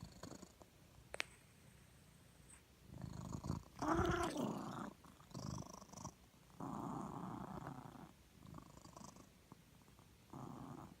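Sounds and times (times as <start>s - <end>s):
cat snoring: 0.0s - 0.6s, 2.9s - 9.3s, 9.9s - 11.0s.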